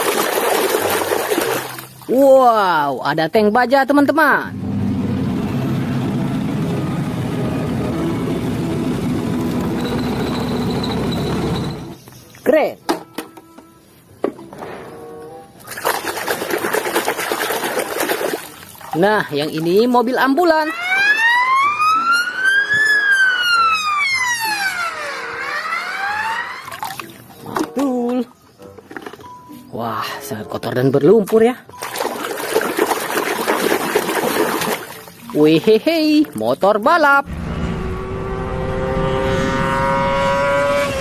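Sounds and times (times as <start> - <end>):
heavy engine running: 4.5 - 12.0, 37.3 - 40.4
ambulance siren wailing: 20.3 - 27.3.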